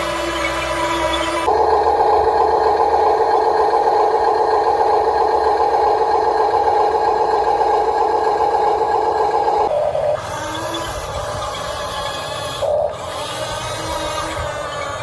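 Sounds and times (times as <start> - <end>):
toy electric motor whining: 9.7 - 15.0.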